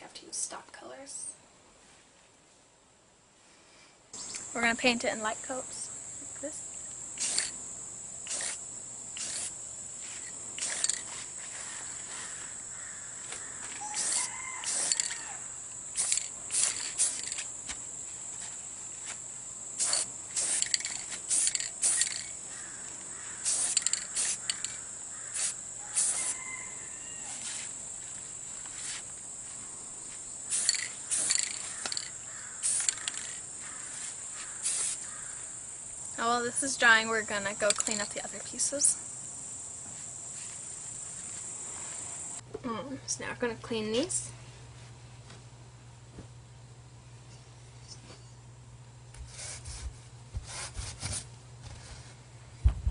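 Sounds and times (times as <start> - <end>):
spray can hissing: 7.2 - 7.6, 8.2 - 8.6, 9.2 - 11.6, 13.8 - 15.2, 15.9 - 17.5, 19.8 - 22.4, 23.4 - 26.4, 30.5 - 35.1.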